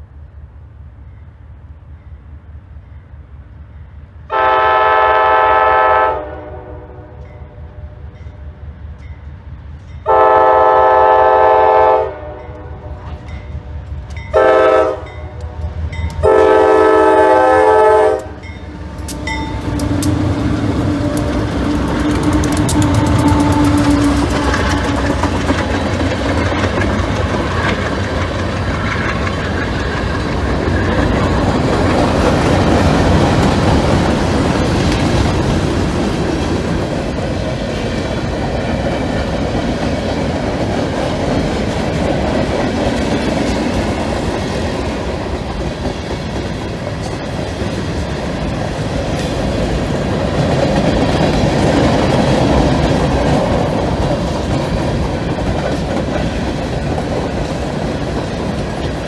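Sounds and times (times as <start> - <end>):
freight train cars rumbling: 0.0 - 59.0
wheels clattering on rail: 12.5 - 59.0.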